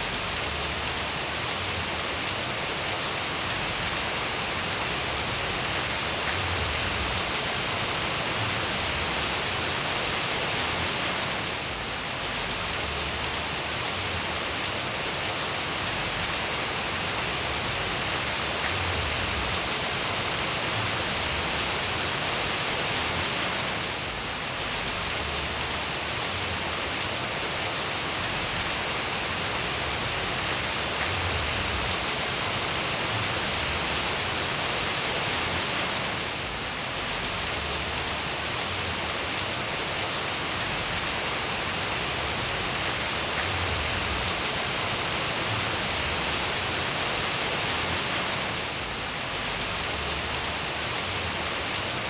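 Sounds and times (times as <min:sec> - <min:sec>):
steady rain hiss: 0:00.0 - 0:52.0.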